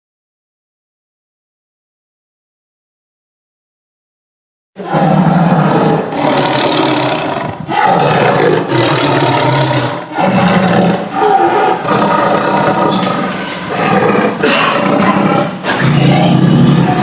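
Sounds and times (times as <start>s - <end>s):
tiger roaring: 4.8s - 17.0s.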